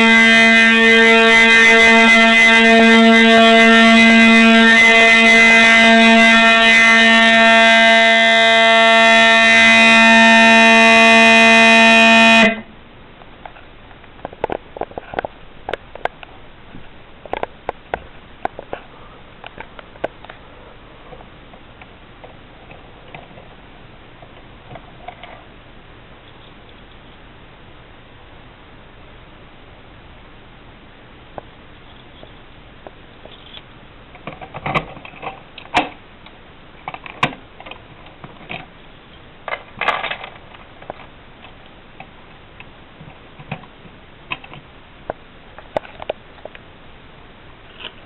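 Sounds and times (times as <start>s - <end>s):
fire alarm buzzy horn tone: 0.0s - 12.8s.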